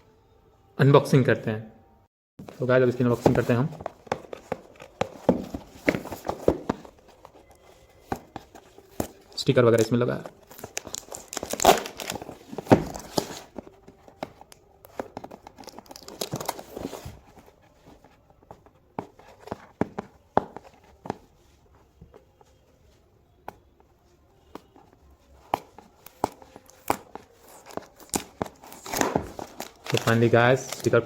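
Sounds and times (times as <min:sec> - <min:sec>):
paper rustling and tearing: 0:10.3 - 0:13.8, 0:25.4 - 0:31.0.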